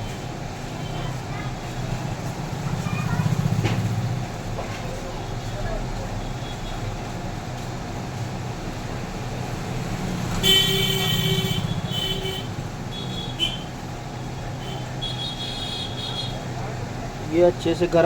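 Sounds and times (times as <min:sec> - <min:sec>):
vehicle horn honking: 0:10.4 - 0:13.7, 0:14.6 - 0:16.4.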